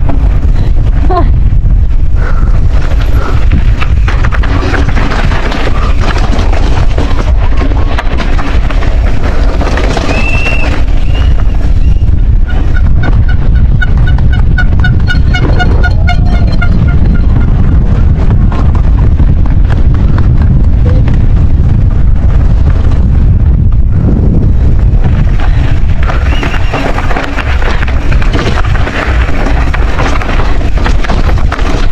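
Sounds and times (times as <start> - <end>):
wind buffeting microphone: 0.0 - 31.9.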